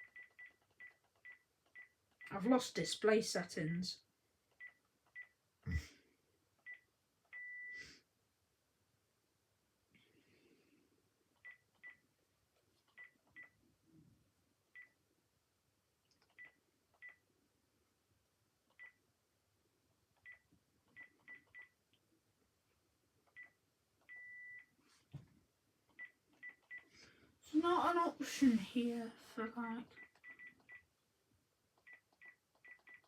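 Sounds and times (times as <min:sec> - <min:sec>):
phone keypad beeps: 0:06.7 - 0:07.8, 0:23.4 - 0:24.7, 0:30.0 - 0:30.8.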